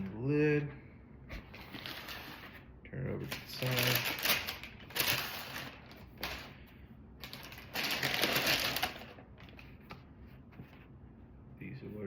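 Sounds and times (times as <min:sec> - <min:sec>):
paper rustling and crinkling: 0:01.4 - 0:06.6, 0:07.2 - 0:10.9.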